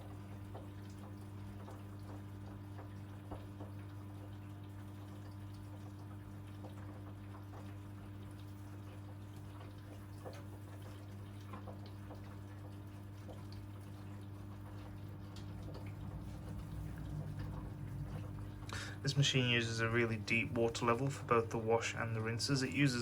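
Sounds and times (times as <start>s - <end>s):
water drips: 0.0s - 23.0s
water splashing into washing machine: 0.0s - 23.0s
steady low hum: 12.1s - 23.0s.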